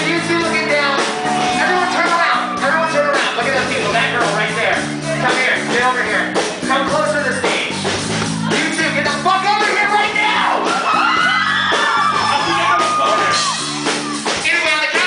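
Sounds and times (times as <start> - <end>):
live rock band playing: 0.0 - 15.0
shouted lead vocal: 8.3 - 15.0.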